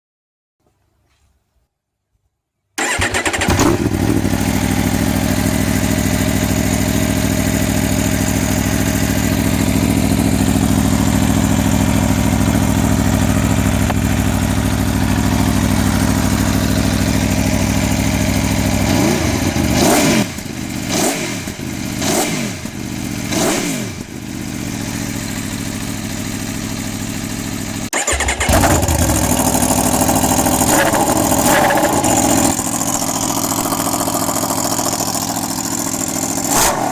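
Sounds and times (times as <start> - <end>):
motorcycle engine idling and revving: 2.8 - 36.9.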